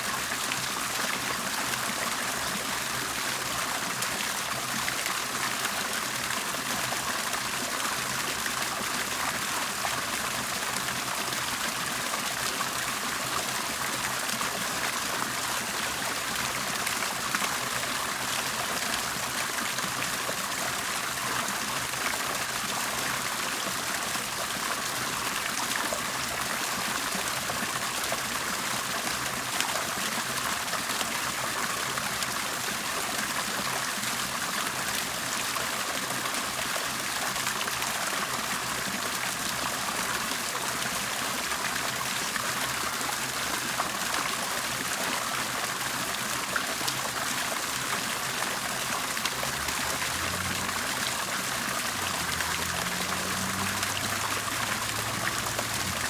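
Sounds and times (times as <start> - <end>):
water bubbling and splashing: 46.8 - 56.0.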